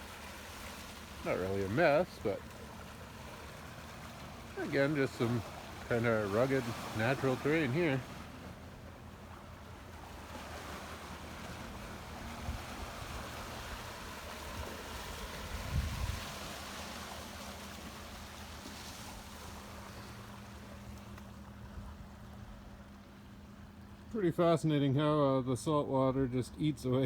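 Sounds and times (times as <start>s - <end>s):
waves washing against rocks: 0.0s - 8.7s, 9.7s - 20.9s
wind buffeting microphone: 14.6s - 16.6s.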